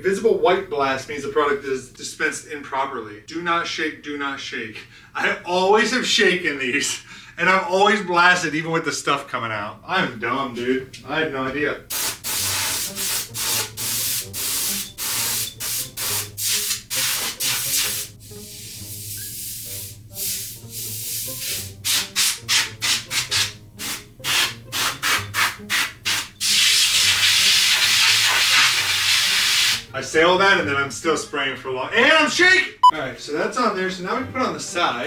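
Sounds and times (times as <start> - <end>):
compressed air spray hissing: 11.9 - 29.9.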